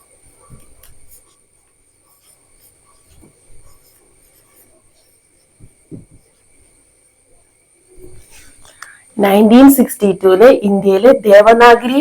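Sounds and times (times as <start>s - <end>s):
faint high-pitched whine: 0.0s - 12.0s
pen scratching while writing: 0.4s - 6.3s
soft low thumps: 5.6s - 6.3s.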